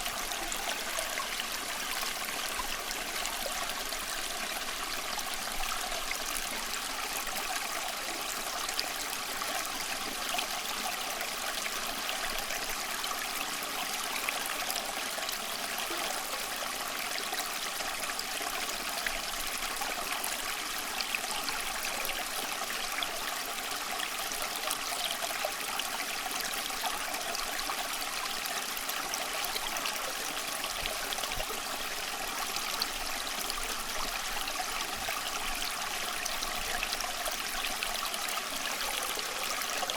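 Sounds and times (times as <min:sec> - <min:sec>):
stream water flowing: 0:00.0 - 0:39.9.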